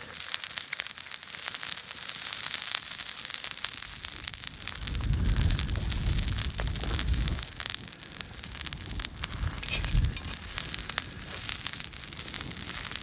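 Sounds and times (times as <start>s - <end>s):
food frying sizzle with crackling: 0.0s - 13.0s
low rumble: 3.9s - 12.9s.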